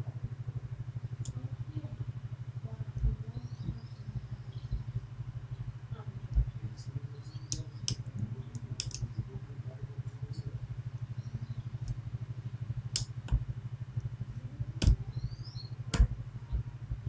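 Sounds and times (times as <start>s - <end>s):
low pulsing hum: 0.0s - 17.0s
soft low knocks: 1.2s - 9.5s, 10.2s - 17.0s
lock pick clicking: 8.8s - 9.0s.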